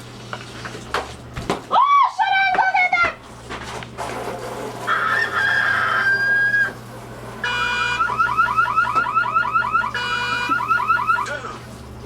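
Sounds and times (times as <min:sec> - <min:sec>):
electronic chirping alarm: 0:07.4 - 0:11.4.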